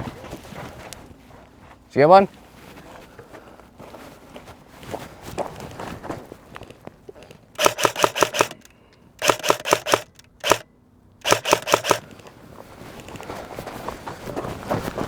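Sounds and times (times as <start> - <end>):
airsoft rifle shots: 7.6 - 10.6, 11.2 - 12.1.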